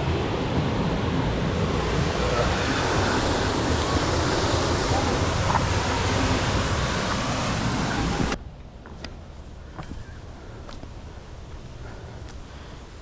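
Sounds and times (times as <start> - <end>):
waterfall rushing: 0.0 - 8.4.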